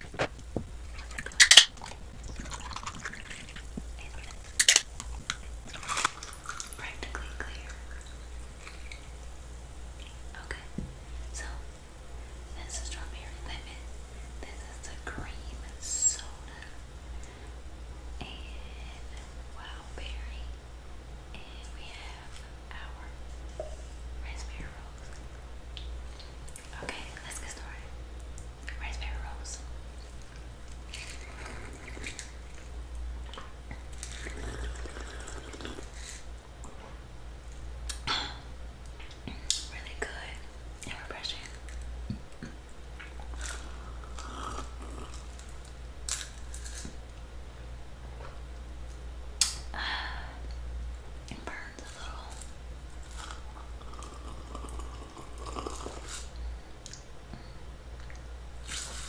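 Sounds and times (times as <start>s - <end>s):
soda being sipped: 0.1s - 17.5s, 30.8s - 32.7s, 33.3s - 36.3s, 43.2s - 45.7s, 53.1s - 56.4s
sipping and swallowing fizzy drink: 30.2s - 36.0s, 53.2s - 57.0s.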